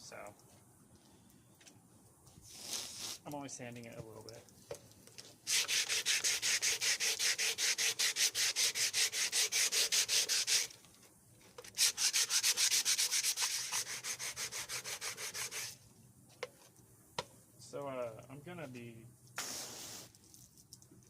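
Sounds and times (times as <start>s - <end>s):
sandpaper rubbing back and forth: 2.4s - 3.2s, 5.4s - 10.7s, 11.7s - 15.8s.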